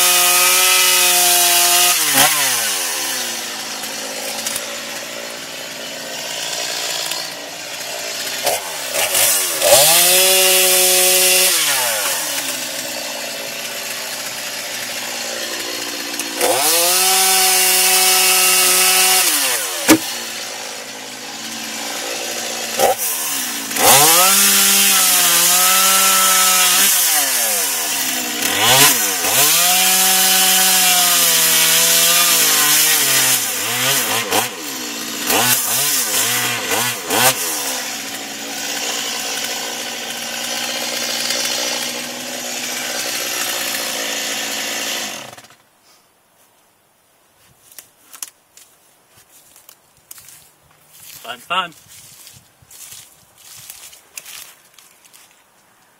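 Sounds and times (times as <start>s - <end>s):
chainsaw cutting wood: 0.0s - 45.7s, 49.3s - 55.6s
sharp knock: 19.9s - 20.1s.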